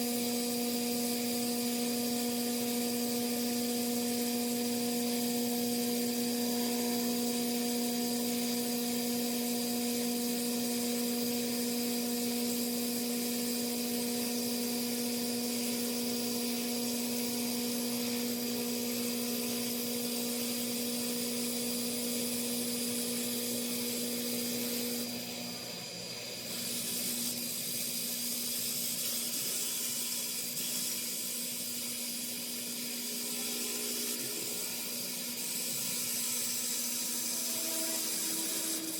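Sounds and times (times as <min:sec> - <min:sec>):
machine spindle whine: 0:00.0 - 0:27.6, 0:31.7 - 0:38.9
hissing wood cutting: 0:32.2 - 0:38.9.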